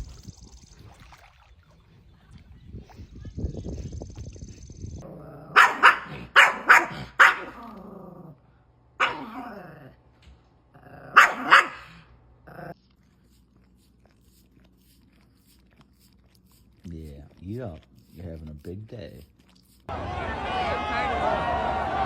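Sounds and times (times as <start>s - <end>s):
dog barking: 5.5s - 7.6s, 9.0s - 9.4s, 11.1s - 12.1s.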